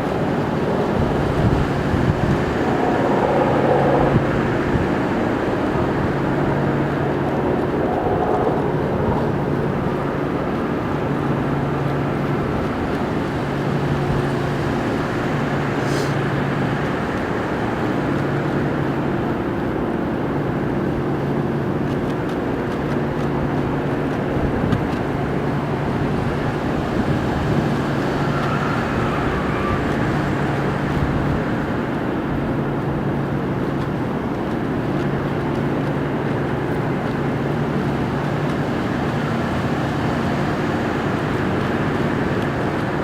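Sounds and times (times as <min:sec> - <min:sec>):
low hum: 0:00.0 - 0:13.2
outdoor background noise: 0:00.0 - 0:43.0.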